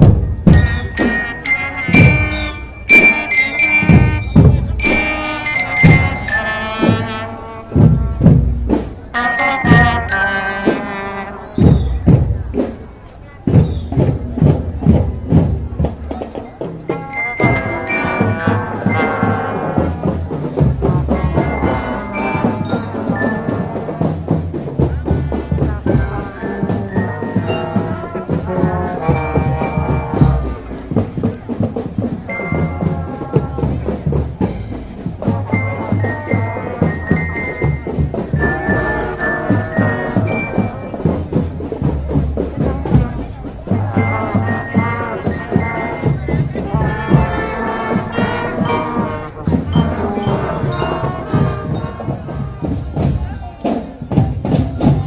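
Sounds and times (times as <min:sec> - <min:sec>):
snare and bass drums: 0:00.0 - 0:55.0
bell lyra melody: 0:00.1 - 0:07.8, 0:09.1 - 0:10.9, 0:16.9 - 0:20.0, 0:21.1 - 0:24.2, 0:25.9 - 0:30.6, 0:35.4 - 0:41.3, 0:43.7 - 0:53.5.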